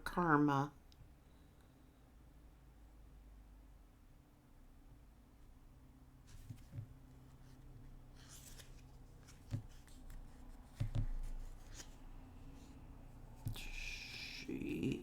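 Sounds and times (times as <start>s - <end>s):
cards swishing: 6.3s - 6.9s, 8.2s - 12.0s.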